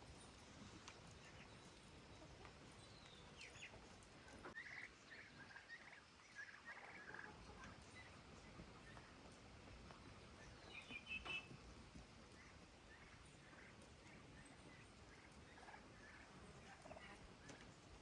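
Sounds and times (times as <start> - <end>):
turkey gobbling: 3.5 - 8.2, 12.4 - 17.7
faint bird calls: 10.0 - 11.6.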